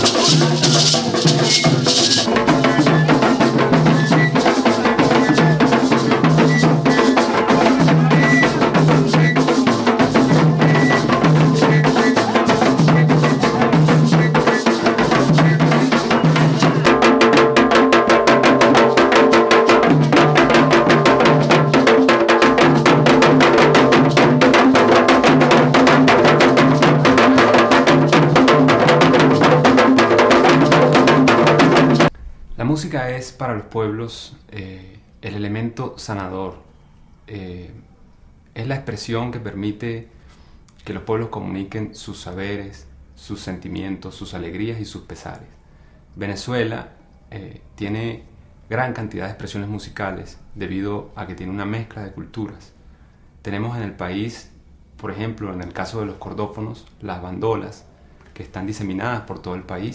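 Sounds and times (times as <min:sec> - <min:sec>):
drums and percussion: 0:00.0 - 0:32.2.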